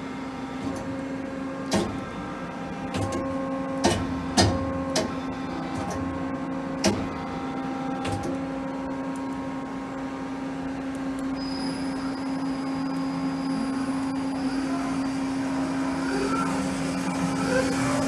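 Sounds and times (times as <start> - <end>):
lathe machine hum: 0.0 - 18.0
thin high whine: 8.5 - 18.0.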